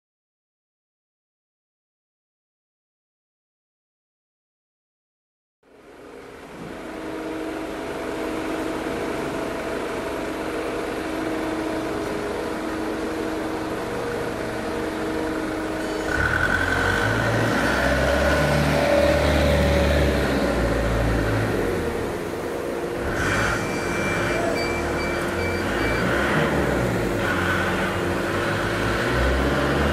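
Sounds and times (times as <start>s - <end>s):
high machine whine: 5.7s - 29.9s
machinery humming: 5.7s - 29.9s
deep machine hum: 6.1s - 29.9s.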